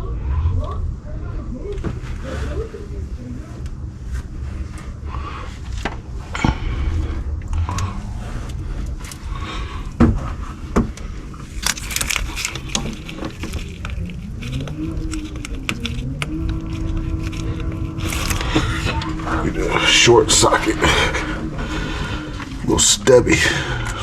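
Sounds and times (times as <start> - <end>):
steady low rumble: 0.0 - 24.0
tool scraping: 11.4 - 23.2.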